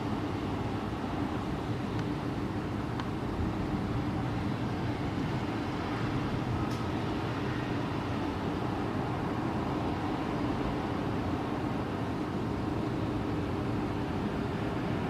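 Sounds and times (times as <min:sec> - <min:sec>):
low rumbling background noise: 0:00.0 - 0:15.0
faint click: 0:06.7 - 0:06.9.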